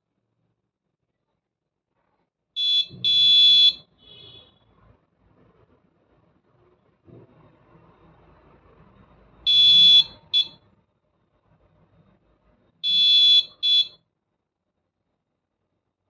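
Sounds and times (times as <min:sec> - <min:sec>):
morse code buzzer beeping: 0:02.6 - 0:04.5, 0:09.5 - 0:10.6, 0:12.8 - 0:14.0.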